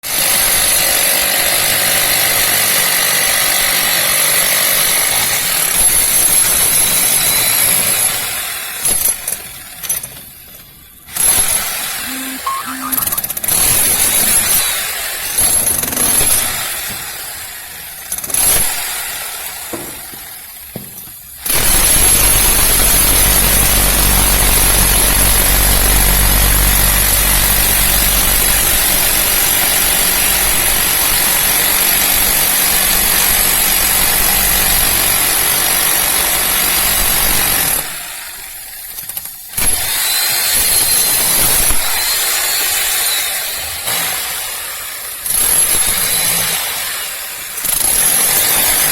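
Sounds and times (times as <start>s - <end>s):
demolition hammer chiselling concrete: 0.1s - 11.6s, 14.9s - 48.9s.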